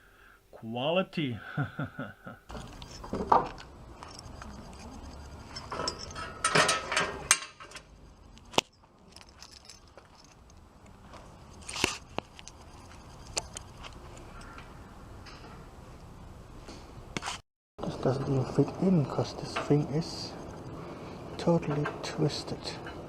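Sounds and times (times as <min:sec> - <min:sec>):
metal bicycle parts clinking: 0:02.5 - 0:14.6.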